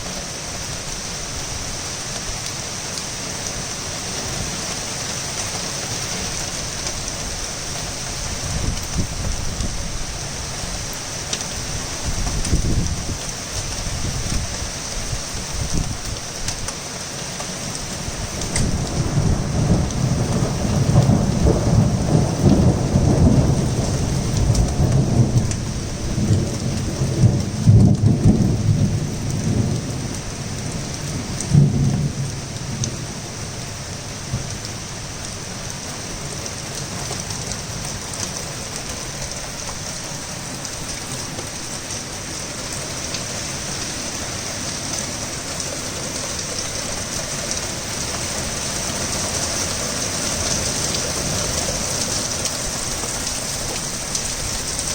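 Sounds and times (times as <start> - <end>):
heavy rain: 0.0 - 54.9
thunder rumbling: 18.0 - 33.4.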